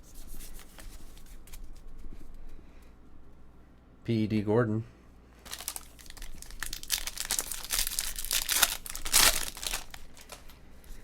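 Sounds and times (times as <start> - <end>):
card pack wrappers crinkling: 5.4 - 10.6.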